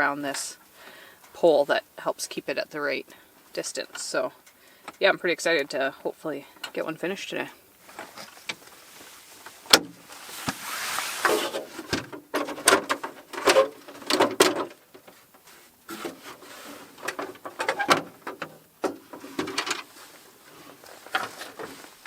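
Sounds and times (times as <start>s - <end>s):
scraping: 7.8s - 22.0s
knocks and rubbing: 9.7s - 22.0s.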